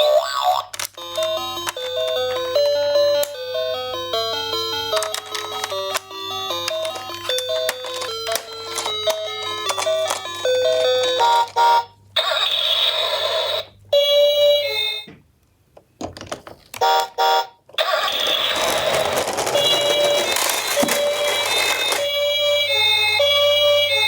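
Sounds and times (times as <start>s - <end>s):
toy siren through small speaker: 20.0s - 24.0s.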